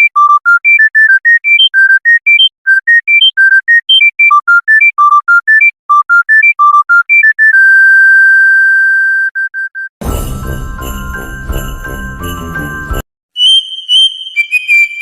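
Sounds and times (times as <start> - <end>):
phone ringtone melody: 10.0 - 13.1.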